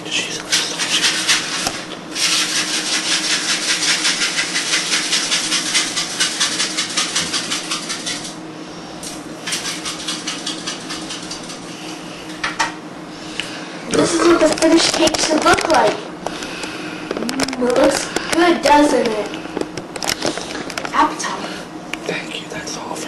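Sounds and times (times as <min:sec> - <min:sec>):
sprinkles rattling in shaker: 0:00.5 - 0:08.4, 0:09.4 - 0:11.6.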